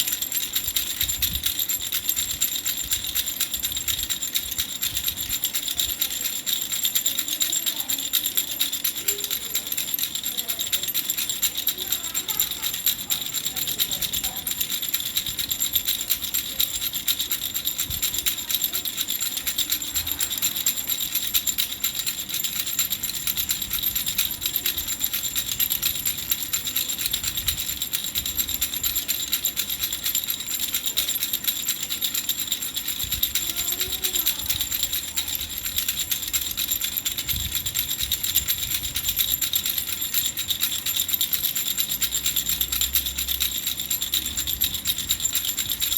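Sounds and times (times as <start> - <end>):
hand rattle shaken: 0.0 - 45.9.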